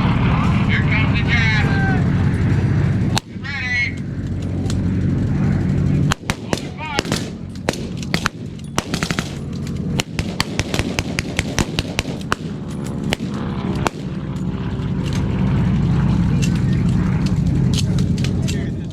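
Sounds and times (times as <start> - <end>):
aircraft engine drone: 0.0 - 18.9
blank gunfire: 6.1 - 9.4, 10.0 - 14.2.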